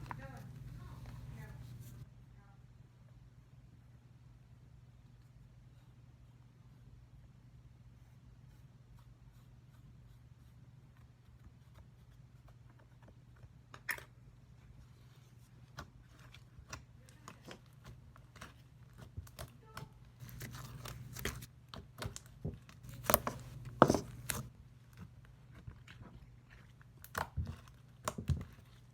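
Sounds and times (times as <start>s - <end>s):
steady low hum: 0.0s - 8.9s, 19.6s - 21.5s, 22.7s - 27.0s.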